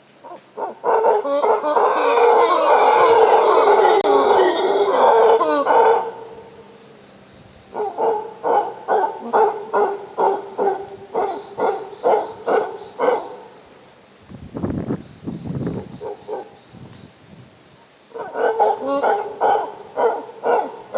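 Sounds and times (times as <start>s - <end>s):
short hoarse barking calls: 0.6s - 6.5s, 7.7s - 13.6s, 18.1s - 20.9s
animal calls with sliding pitches: 0.6s - 6.7s.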